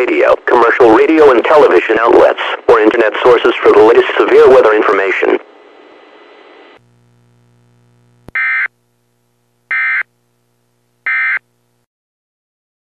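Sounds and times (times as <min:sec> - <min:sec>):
faint low hum: 0:02.5 - 0:11.9.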